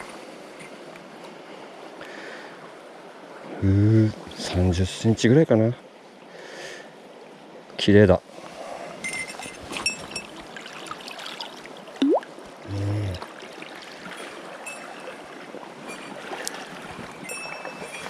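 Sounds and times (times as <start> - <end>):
river water trickling: 5.8 - 18.0.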